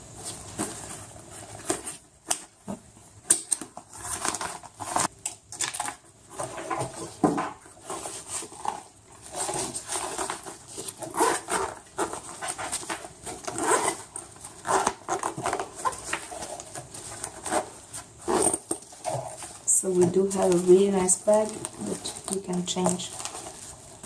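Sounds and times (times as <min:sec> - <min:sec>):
fabric bag rustling: 0:06.2 - 0:24.0.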